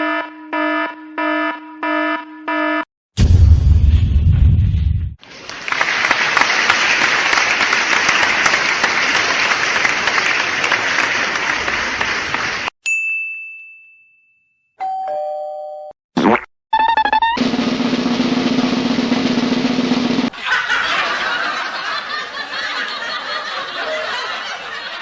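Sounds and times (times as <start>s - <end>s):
bright ding: 12.8s - 15.9s.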